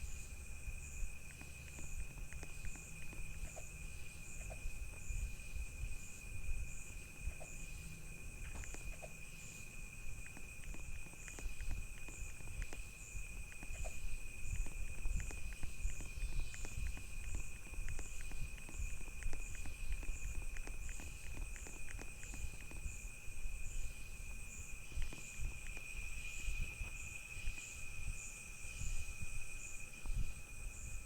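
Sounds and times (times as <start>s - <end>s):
insects trilling: 0.0s - 31.0s
pulsing insect chirp: 0.0s - 31.0s
small clicks: 1.2s - 3.6s, 10.2s - 14.0s, 14.6s - 23.0s.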